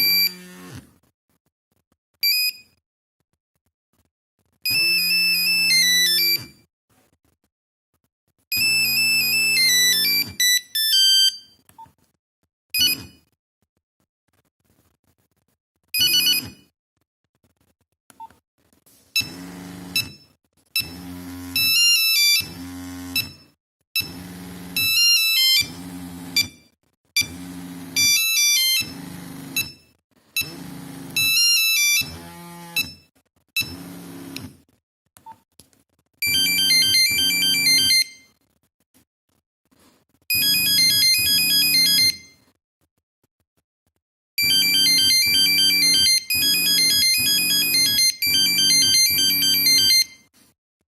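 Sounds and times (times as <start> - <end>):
mobile phone ringtone beeping: 8.6 - 11.6, 16.0 - 16.6, 36.2 - 38.3, 40.3 - 42.4, 44.4 - 50.2.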